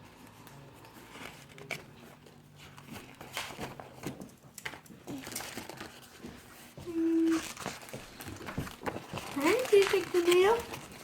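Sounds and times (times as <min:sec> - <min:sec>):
wrapper crinkling: 0:05.1 - 0:06.2, 0:06.9 - 0:11.0.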